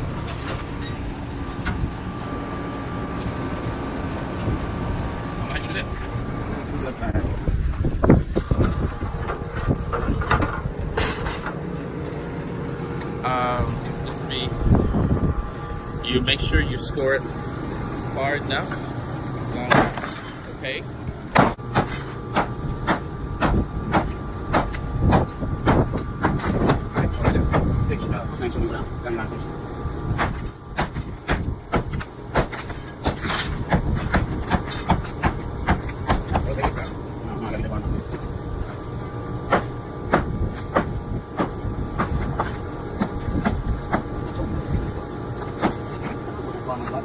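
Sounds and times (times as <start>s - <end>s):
steady background hum: 0.0s - 47.0s
hammer striking concrete: 21.3s - 27.7s, 30.2s - 36.9s, 39.5s - 44.1s, 45.6s - 46.2s
sledgehammer striking concrete block: 21.4s - 27.7s.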